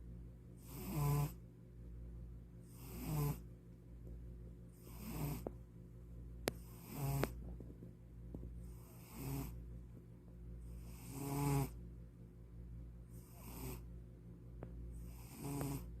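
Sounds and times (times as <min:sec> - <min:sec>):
cat snoring: 0:00.6 - 0:01.4, 0:02.6 - 0:03.4, 0:04.8 - 0:05.5, 0:06.6 - 0:07.4, 0:08.6 - 0:09.6, 0:10.7 - 0:11.8, 0:13.2 - 0:13.9, 0:15.0 - 0:16.0.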